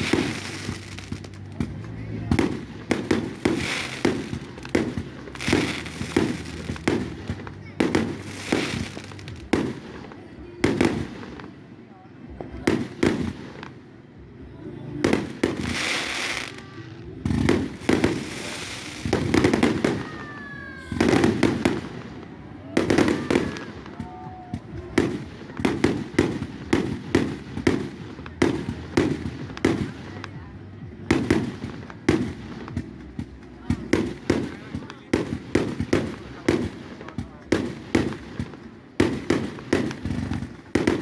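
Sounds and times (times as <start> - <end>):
firework whistling: 0.0 - 1.6, 2.5 - 9.5, 15.5 - 22.1
firework bangs: 0.0 - 11.6, 15.0 - 41.0
firework cake shots: 0.0 - 11.6, 14.9 - 41.0
firework crackling: 0.0 - 11.6, 14.9 - 41.0.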